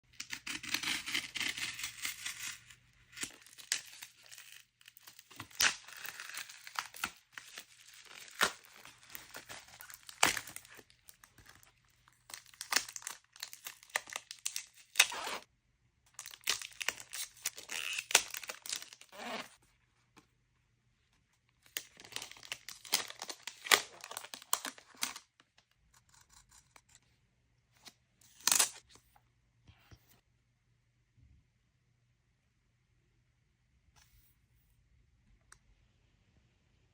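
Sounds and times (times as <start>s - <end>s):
packaging tearing and crinkling: 0.2s - 15.4s, 16.1s - 19.6s, 21.7s - 25.4s, 28.4s - 28.8s.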